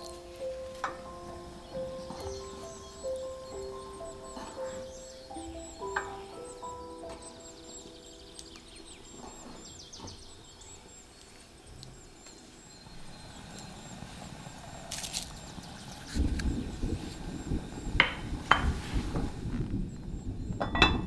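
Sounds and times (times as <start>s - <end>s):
birds chirping: 0.0s - 21.0s
soft knocks: 0.5s - 7.5s, 18.0s - 19.4s.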